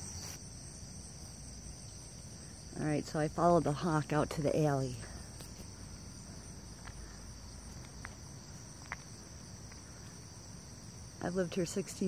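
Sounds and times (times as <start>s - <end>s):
high-pitched insect chorus: 0.0s - 12.0s
faint ticks: 6.8s - 8.2s.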